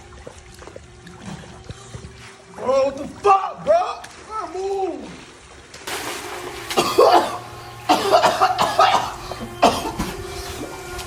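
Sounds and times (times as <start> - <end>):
person coughing hard: 6.8 - 10.2.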